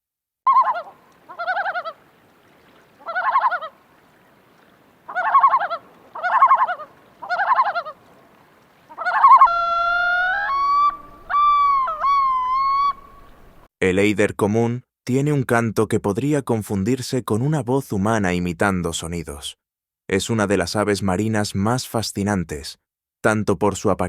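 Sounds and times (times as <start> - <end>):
loon calling: 0.5 - 2.0, 2.9 - 3.8, 5.0 - 8.1, 8.8 - 13.7.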